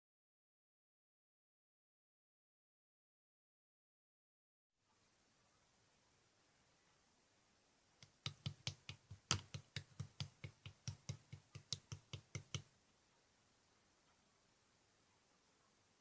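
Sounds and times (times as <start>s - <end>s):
sharp taps: 8.0s - 12.7s.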